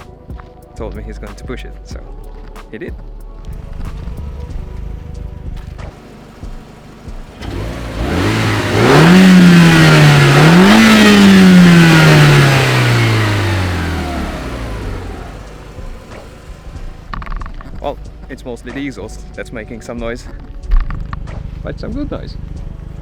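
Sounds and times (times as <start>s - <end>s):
car engine accelerating hard: 3.6s - 17.8s.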